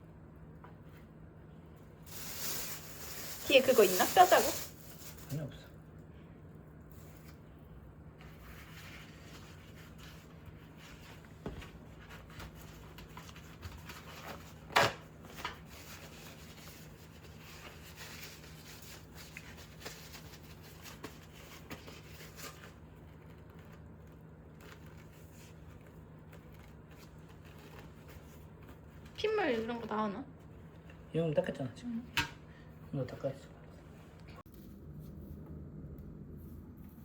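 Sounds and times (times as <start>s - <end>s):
kitchen rubbing and rustling: 2.1s - 5.5s
steady low hum: 4.2s - 37.0s.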